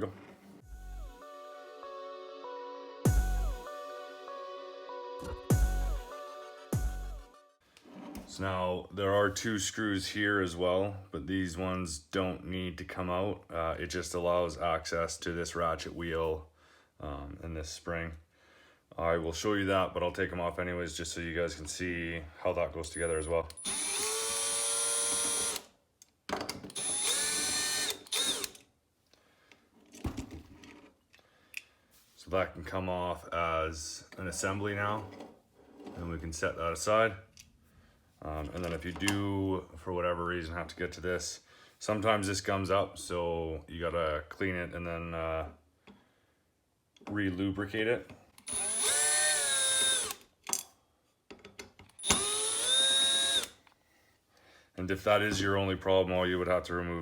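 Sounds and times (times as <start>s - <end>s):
cordless power driver whining: 23.6s - 25.7s, 26.8s - 28.6s, 48.4s - 50.2s, 52.0s - 53.6s
electric screwdriver running: 23.6s - 25.7s, 26.8s - 28.6s, 48.4s - 50.2s, 52.0s - 53.6s.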